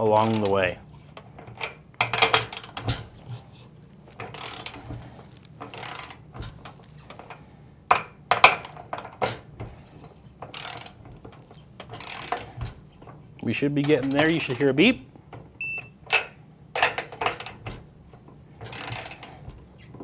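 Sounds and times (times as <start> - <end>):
ratchet wrench clicking: 0.0 - 0.6, 4.1 - 7.0, 10.5 - 11.0, 12.0 - 12.6, 14.1 - 14.8, 18.7 - 19.3.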